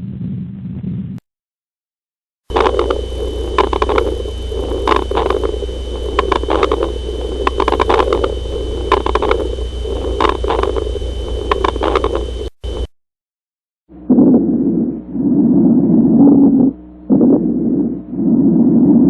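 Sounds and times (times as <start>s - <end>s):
crackling clicks in chest: 2.5s - 12.8s
deep rumble: 2.5s - 12.9s, 13.9s - 19.0s
steady high whine: 2.5s - 12.9s, 13.9s - 19.0s.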